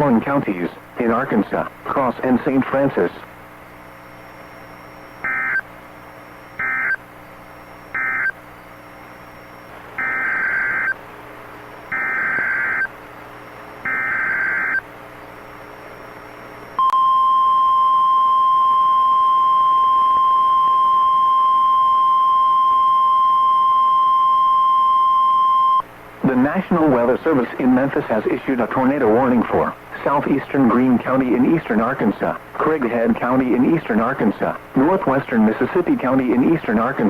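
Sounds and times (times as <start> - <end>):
steady warning alarm tone: 4.8 - 5.7, 6.4 - 11.0, 11.9 - 12.9, 13.8 - 14.9
warbling data bursts: 10.0 - 11.0, 13.9 - 14.8.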